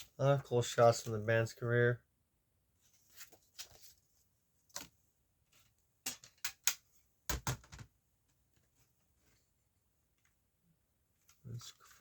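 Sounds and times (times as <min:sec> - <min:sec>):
paper pages rustling: 0:02.8 - 0:05.8.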